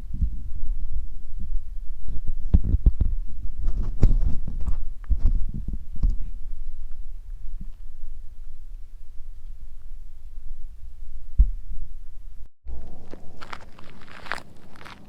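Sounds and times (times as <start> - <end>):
wind buffeting microphone: 0.0 - 15.0.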